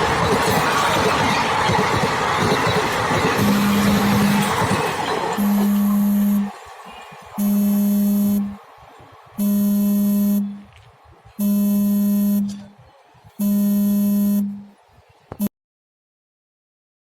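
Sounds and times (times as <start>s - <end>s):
locomotive horn blasts: 3.4s - 4.6s, 5.4s - 6.6s, 7.4s - 8.6s, 9.4s - 10.7s, 11.4s - 12.8s, 13.4s - 14.7s.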